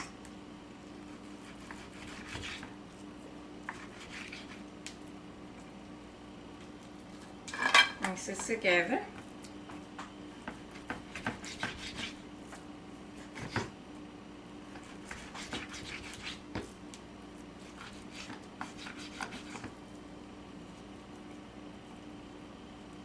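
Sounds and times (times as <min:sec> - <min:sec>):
knife cutting meat on board: 0:01.2 - 0:02.8, 0:03.6 - 0:04.6, 0:10.5 - 0:12.6, 0:13.2 - 0:13.7, 0:14.8 - 0:16.7, 0:17.6 - 0:19.7.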